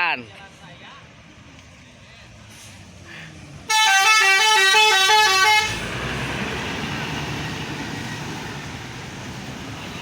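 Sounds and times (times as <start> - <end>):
bus and road noise: 0.0 - 10.0
air horns playing a tune: 3.7 - 5.8.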